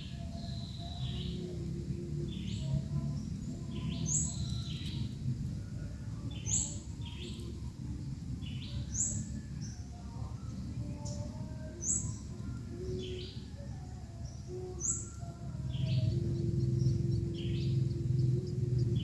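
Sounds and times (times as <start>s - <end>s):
birds chirping high and thin: 0.0s - 19.0s
low rumble: 15.1s - 19.0s.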